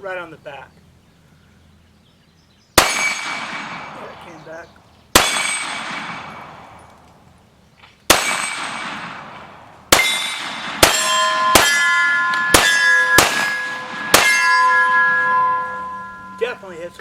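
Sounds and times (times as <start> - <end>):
pistol shots: 2.8 - 4.4, 5.1 - 7.0, 8.1 - 14.5
steel targets ringing: 2.8 - 4.5, 5.2 - 6.9, 8.1 - 17.0.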